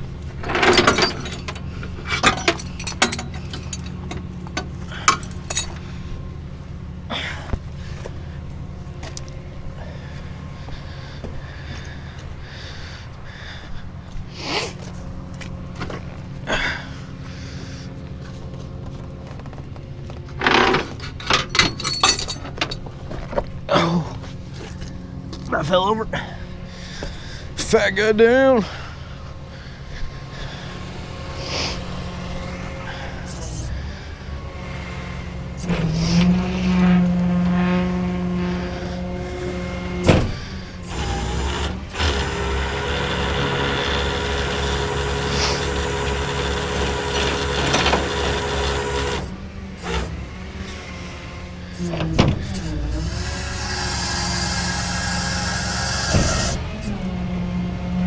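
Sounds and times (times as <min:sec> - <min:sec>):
truck engine idling: 0:00.0 - 0:58.0
knocks and clatter: 0:00.2 - 0:05.8, 0:18.8 - 0:23.6
short noisy bursts: 0:37.6 - 0:50.2, 0:51.7 - 0:56.9.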